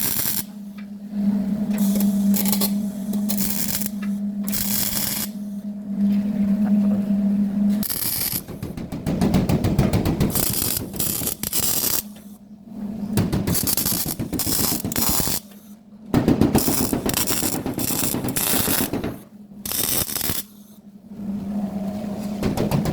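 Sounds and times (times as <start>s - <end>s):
welder crackling: 0.0s - 0.6s, 1.8s - 5.4s, 7.8s - 9.4s, 10.0s - 12.4s, 13.2s - 15.6s, 16.2s - 20.6s.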